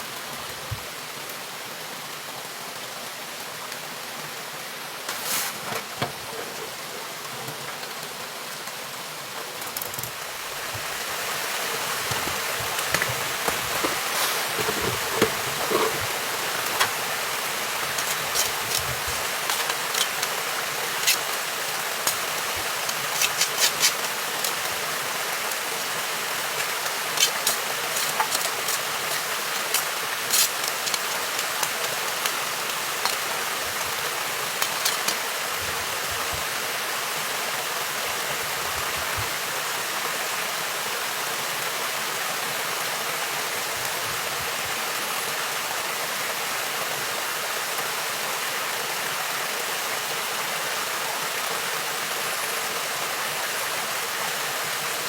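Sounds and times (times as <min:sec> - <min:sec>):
flowing water rushing: 0:00.0 - 0:55.0.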